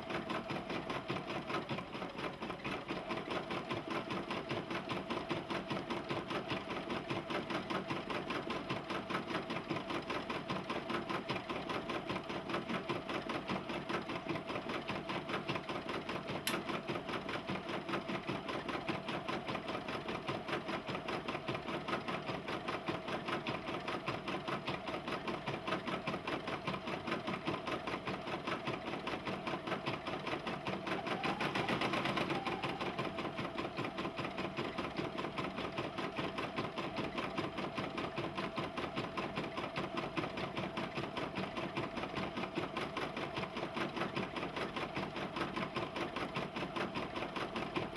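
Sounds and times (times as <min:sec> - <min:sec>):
sharp click: 0:16.4 - 0:16.6.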